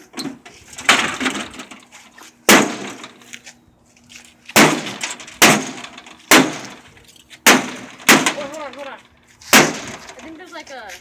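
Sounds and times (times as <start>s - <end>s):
mallet smashing microwave oven: 0.8s - 1.8s, 2.5s - 3.2s, 4.5s - 8.9s, 9.5s - 10.2s.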